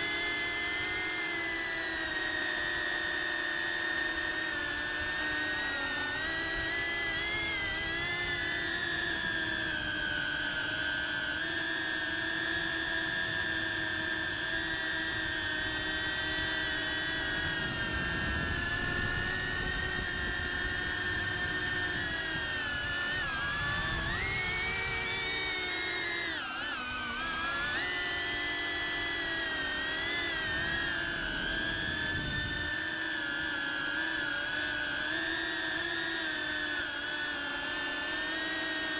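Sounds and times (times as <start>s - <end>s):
drone propellers whining: 11.7s - 34.6s.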